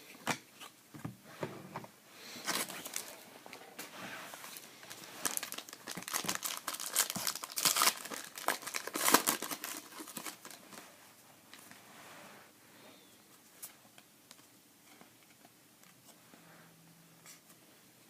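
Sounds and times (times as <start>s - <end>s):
foil wrapper crinkling and tearing: 4.8s - 10.7s.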